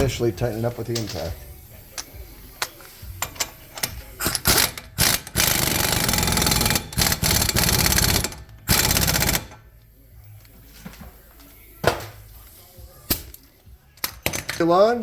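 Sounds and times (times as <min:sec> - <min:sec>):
impact wrench hammering: 0:03.1 - 0:09.6.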